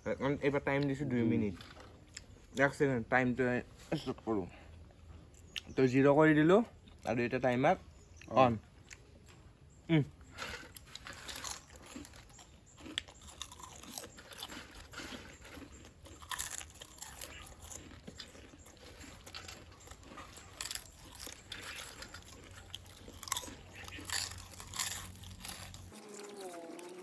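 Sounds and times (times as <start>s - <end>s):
potato chips crunching: 10.2s - 27.0s.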